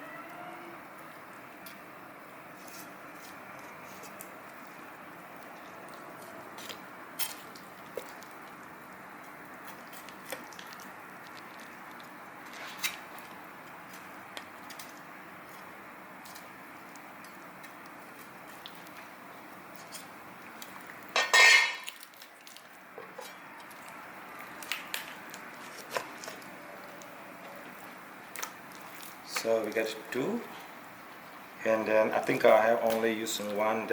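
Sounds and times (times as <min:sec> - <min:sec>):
steady low hiss: 0:00.0 - 0:23.3, 0:23.9 - 0:33.9
dishes clattering: 0:21.2 - 0:21.9
utensils and dishes clinking: 0:21.2 - 0:22.0.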